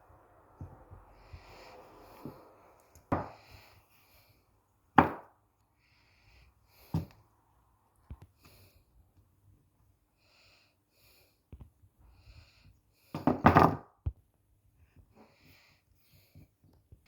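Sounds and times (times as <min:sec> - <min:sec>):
knife chopping onto hard board: 0:05.0 - 0:05.3.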